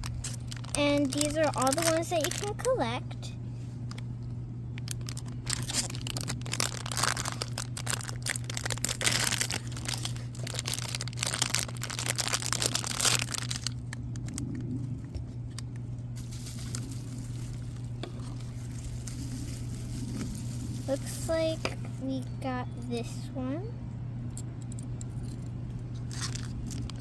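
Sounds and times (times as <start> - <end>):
packaging rustling: 0.0 - 2.7, 4.8 - 14.6, 16.2 - 21.8
plastic packaging crinkling and tearing: 0.0 - 3.0, 4.7 - 22.0, 26.0 - 27.0.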